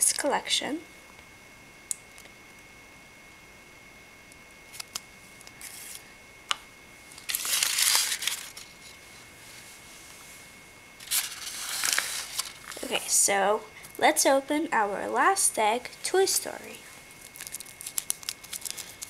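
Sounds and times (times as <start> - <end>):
crinkly packaging rustling: 7.1 - 9.0, 11.0 - 13.1, 17.0 - 19.0.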